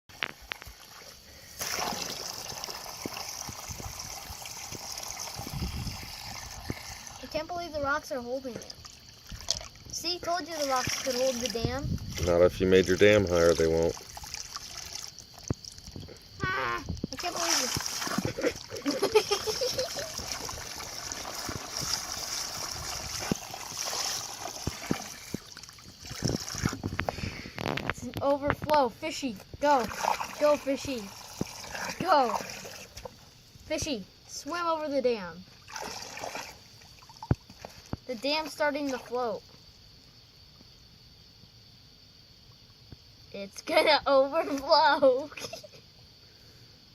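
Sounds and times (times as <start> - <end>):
running water hissing: 0.1 - 28.0, 29.0 - 40.0.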